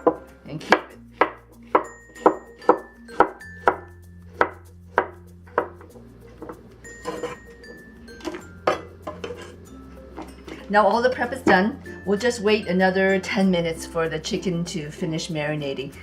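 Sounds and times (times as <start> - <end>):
knife chopping on cutting board: 0.0 - 5.8.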